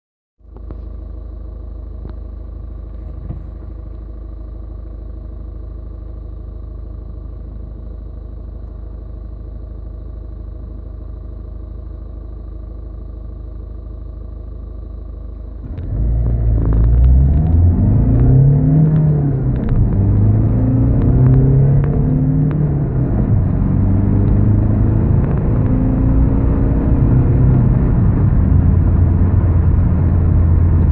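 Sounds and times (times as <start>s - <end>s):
diesel engine idling: 0.4s - 30.9s
engine revving at full throttle: 15.6s - 30.9s.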